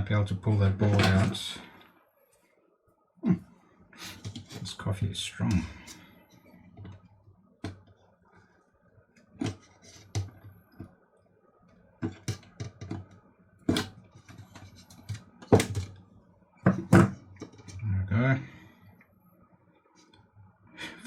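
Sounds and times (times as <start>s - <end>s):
plastic clicks and knocks: 9.3s - 11.0s, 12.0s - 16.0s.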